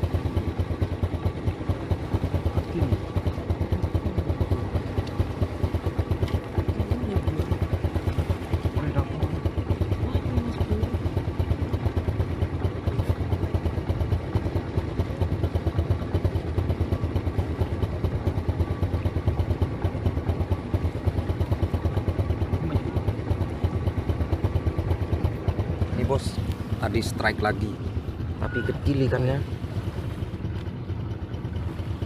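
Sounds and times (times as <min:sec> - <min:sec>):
engine idling: 0:00.0 - 0:32.0.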